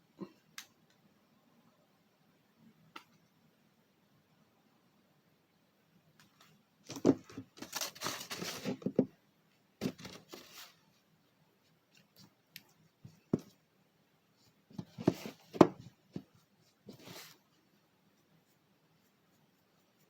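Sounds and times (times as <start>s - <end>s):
rustling and scraping: 6.3s - 9.1s, 9.8s - 11.0s, 14.4s - 20.0s.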